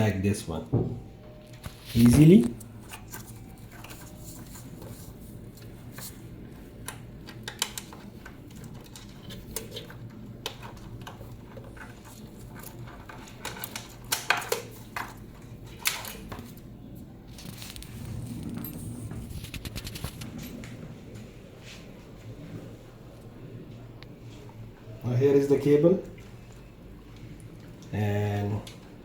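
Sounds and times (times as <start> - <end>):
steady low hum: 14.9 - 29.0.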